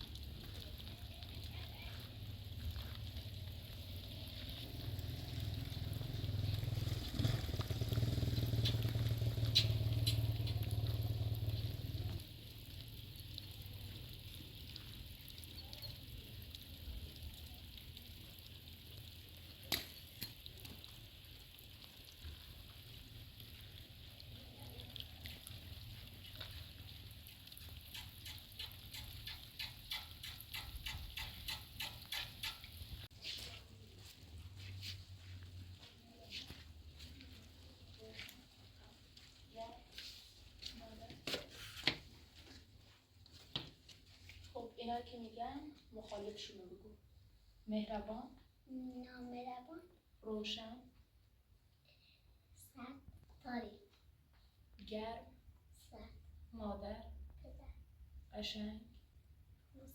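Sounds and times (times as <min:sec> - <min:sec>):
quick ticks: 0:27.9 - 0:32.8.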